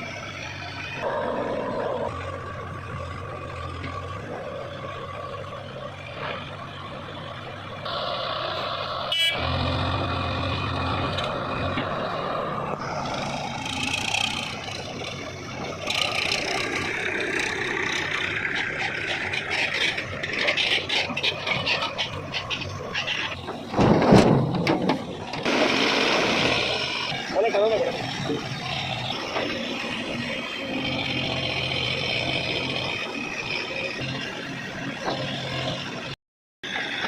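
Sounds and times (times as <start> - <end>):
heavy diesel machinery running: 0.0 - 37.0
knocks and clatter: 18.5 - 25.6.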